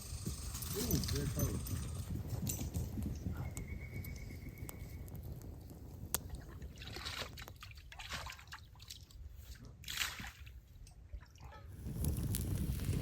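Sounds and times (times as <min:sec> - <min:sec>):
water splashing and sloshing: 0:06.2 - 0:11.7.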